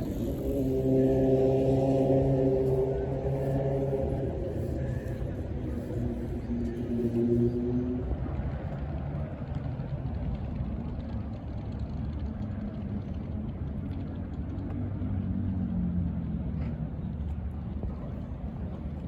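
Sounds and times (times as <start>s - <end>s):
faint hum drifting in pitch: 0.0s - 11.4s
vehicle engine running: 0.0s - 19.0s.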